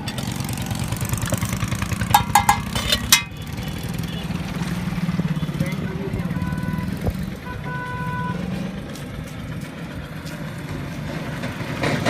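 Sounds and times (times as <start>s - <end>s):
engine running: 0.0s - 12.0s
street traffic: 0.0s - 12.0s
vehicle horn beeping: 3.3s - 4.6s, 5.2s - 8.4s.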